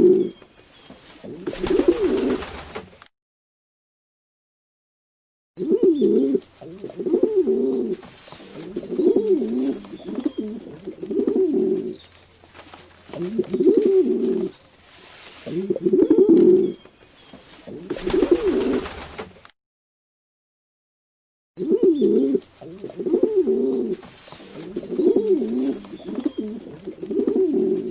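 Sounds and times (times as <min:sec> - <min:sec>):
pigeons cooing: 0:00.0 - 0:00.4, 0:01.2 - 0:02.4, 0:05.6 - 0:12.0, 0:13.1 - 0:14.6, 0:15.4 - 0:19.0, 0:21.6 - 0:27.9.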